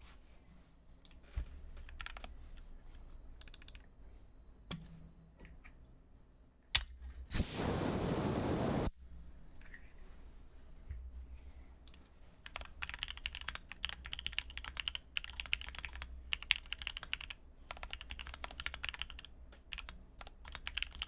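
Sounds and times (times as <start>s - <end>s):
mechanical keyboard clacks: 1.9s - 2.3s, 12.4s - 21.0s.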